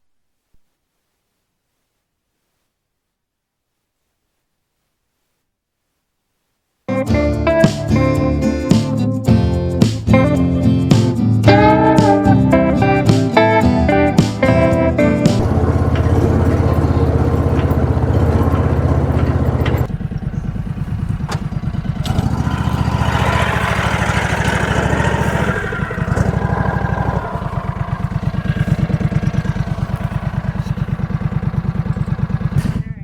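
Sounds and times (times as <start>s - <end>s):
steady low music tones: 15.3s - 32.8s
small engine running: 15.3s - 32.9s.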